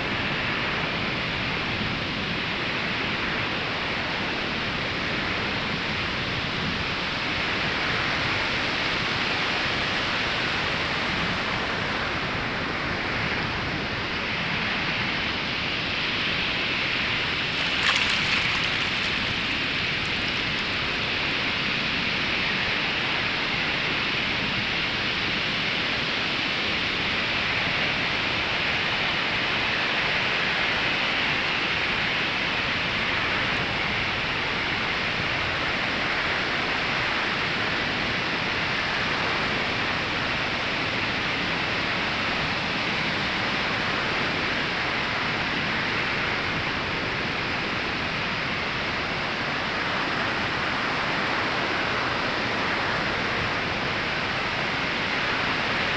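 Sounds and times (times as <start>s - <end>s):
ocean surf on sandy beach: 16.3s - 23.1s, 29.1s - 55.9s.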